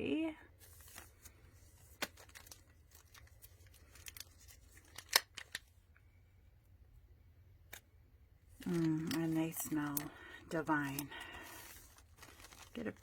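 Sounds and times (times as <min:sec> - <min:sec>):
wrapping crinkling and tearing: 0:00.6 - 0:05.7, 0:08.6 - 0:13.0.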